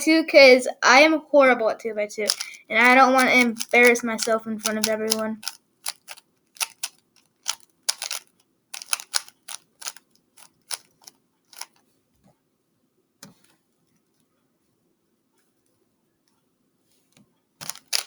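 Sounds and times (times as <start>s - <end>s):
puzzle cube clicking: 2.2s - 11.8s, 17.6s - 18.0s.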